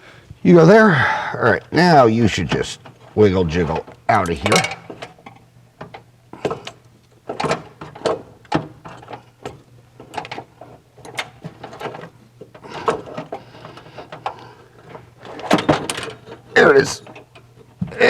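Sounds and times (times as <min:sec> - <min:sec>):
metallic clicks and knocks: 0:03.7 - 0:17.6.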